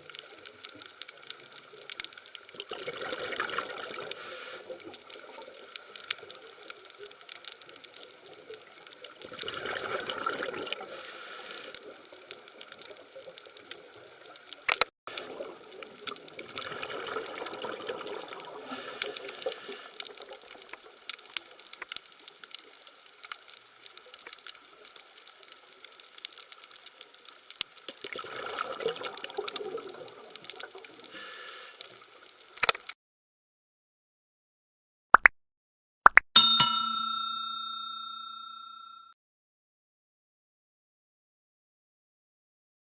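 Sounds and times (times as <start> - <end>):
bubbling gurgling water: 2.4 - 4.2, 9.1 - 10.9, 15.1 - 18.7, 27.9 - 31.1.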